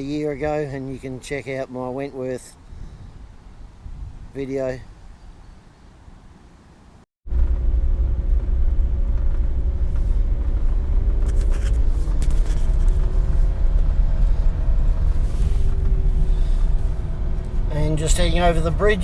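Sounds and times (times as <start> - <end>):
car road and engine rumble: 5.0 - 19.0.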